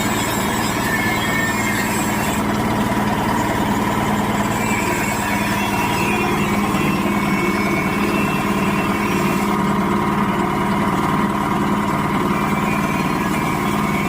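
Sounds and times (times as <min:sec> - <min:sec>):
nut splitting machine droning: 0:00.0 - 0:14.0.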